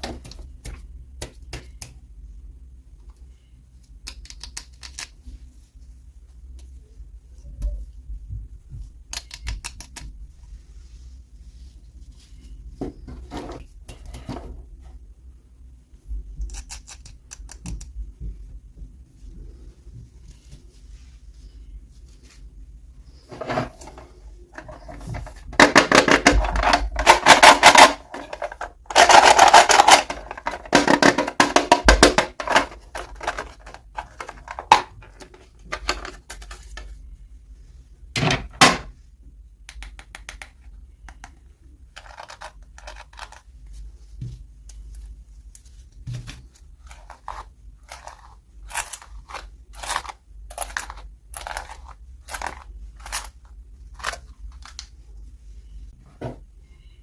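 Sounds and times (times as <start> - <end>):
clicks and taps of toy pieces: 4.0 - 5.1, 9.1 - 10.1, 39.7 - 41.4.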